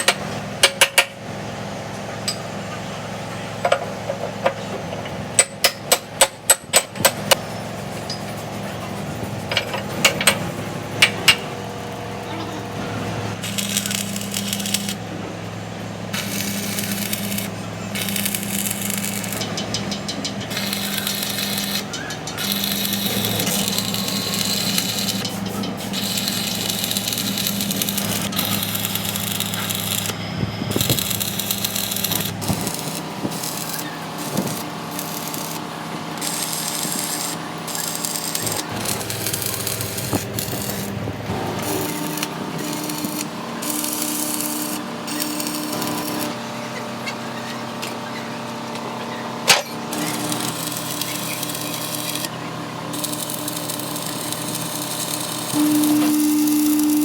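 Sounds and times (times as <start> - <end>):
welding machine hum: 0.0 - 57.0
welding arc crackling: 13.0 - 15.1, 16.1 - 19.5, 20.5 - 46.4, 49.9 - 57.0.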